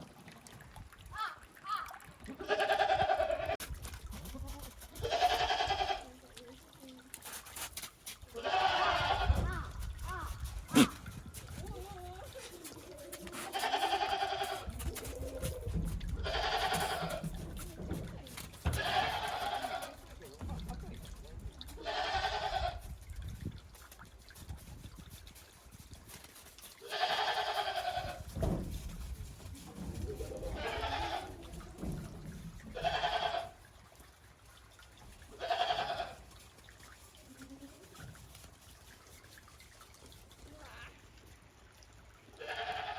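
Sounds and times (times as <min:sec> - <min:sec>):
goats bleating: 0:02.3 - 0:03.6, 0:04.4 - 0:06.2, 0:08.3 - 0:11.1, 0:13.2 - 0:14.9, 0:16.2 - 0:18.0, 0:18.6 - 0:20.0, 0:21.7 - 0:22.8, 0:26.8 - 0:28.3, 0:30.4 - 0:31.9, 0:32.7 - 0:33.6, 0:35.3 - 0:36.3, 0:42.4 - 0:42.9.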